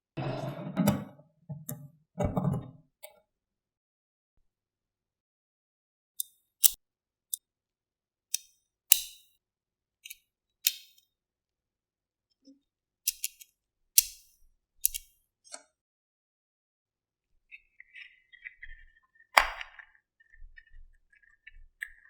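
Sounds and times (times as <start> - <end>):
sharp clicks of small hard parts: 6.2 - 6.8, 8.3 - 9.3, 10.0 - 11.0, 13.1 - 15.1.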